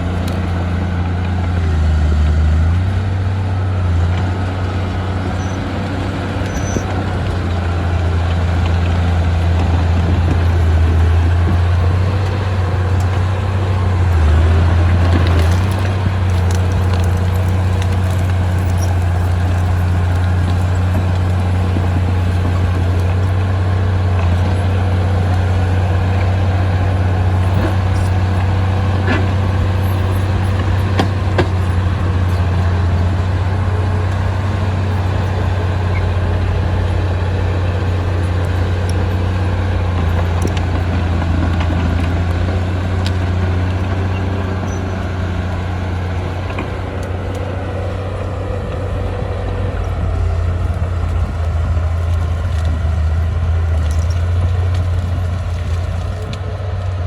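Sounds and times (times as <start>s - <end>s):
diesel machinery droning: 0.0s - 57.0s.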